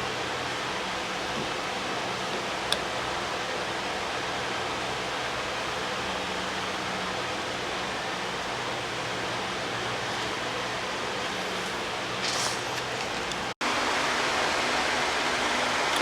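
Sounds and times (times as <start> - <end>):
rushing workshop noise: 5.4 - 16.0.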